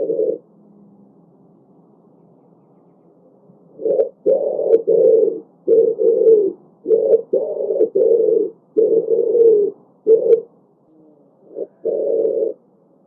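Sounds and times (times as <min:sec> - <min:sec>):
pigeons cooing: 0:00.0 - 0:00.5, 0:03.7 - 0:12.6.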